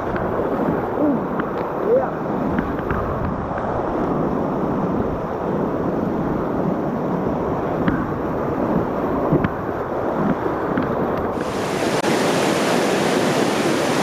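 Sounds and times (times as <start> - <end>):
wind buffeting microphone: 0.0 - 14.0
river whitewater rushing: 11.3 - 14.0.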